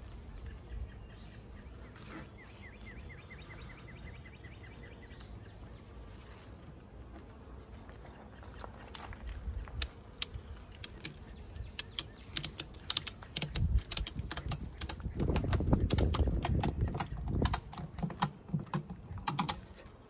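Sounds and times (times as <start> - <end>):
ratchet strap clicking: 10.2 - 19.6.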